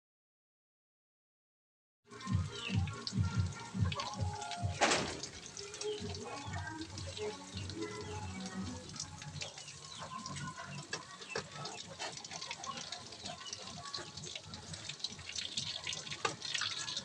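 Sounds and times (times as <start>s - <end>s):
fritters sizzling in hot oil: 2.1s - 17.0s.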